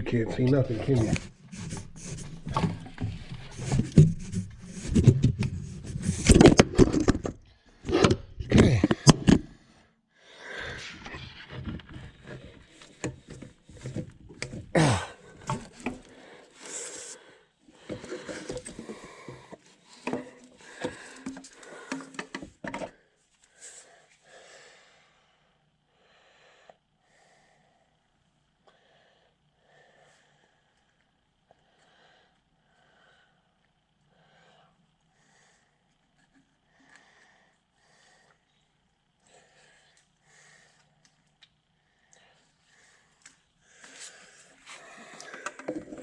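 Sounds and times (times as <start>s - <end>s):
clatter and knocks of handling: 17.8s - 22.9s, 45.2s - 46.0s.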